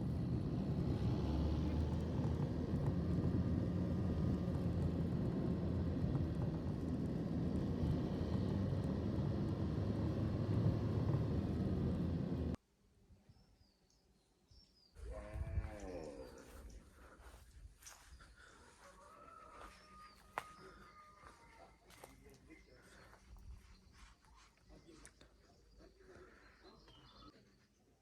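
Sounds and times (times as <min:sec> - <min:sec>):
car engine and road rumble: 0:00.0 - 0:12.6.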